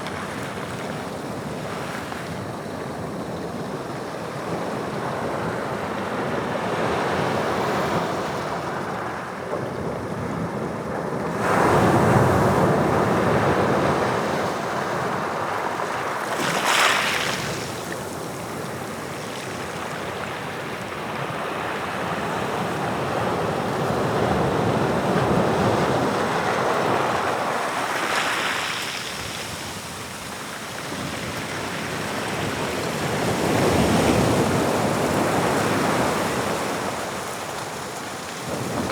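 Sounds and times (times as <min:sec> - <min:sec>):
waves breaking on shore: 0:11.5 - 0:38.9.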